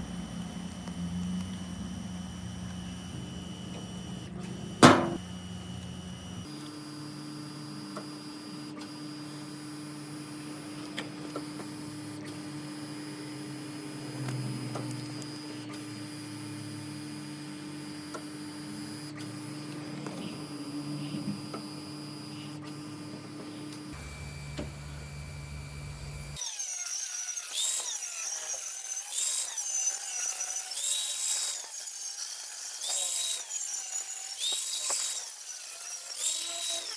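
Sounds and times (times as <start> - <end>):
sharp metallic clank: 4.8 - 5.2.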